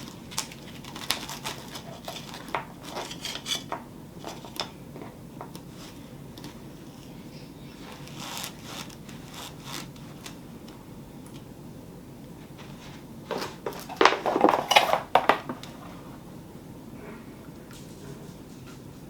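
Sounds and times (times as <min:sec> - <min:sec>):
objects clattering: 0:00.0 - 0:05.5, 0:12.6 - 0:16.2.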